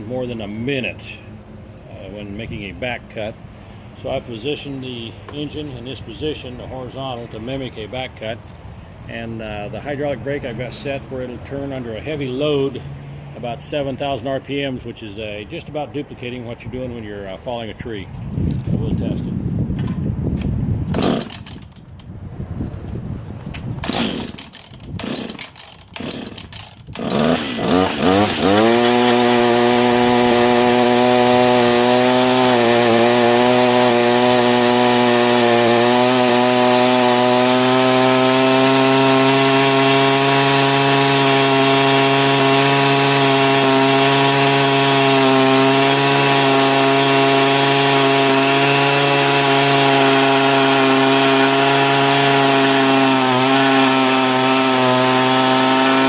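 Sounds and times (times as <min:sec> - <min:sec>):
chainsaw engine at high revs: 0:20.9 - 0:21.9, 0:23.8 - 0:56.0.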